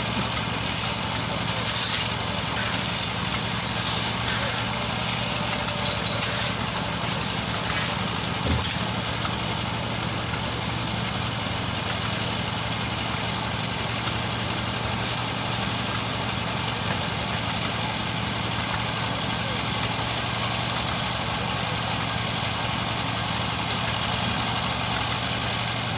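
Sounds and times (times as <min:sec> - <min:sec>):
engine idling: 0:00.0 - 0:25.9.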